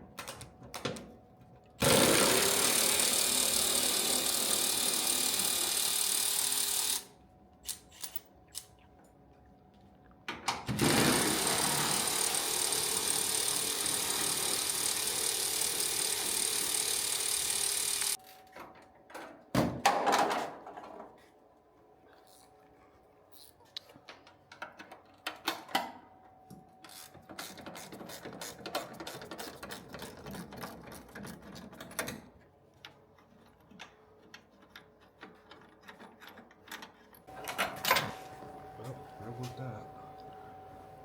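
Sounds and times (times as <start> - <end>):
handheld power tool running: 1.8 - 7.1, 10.7 - 18.2.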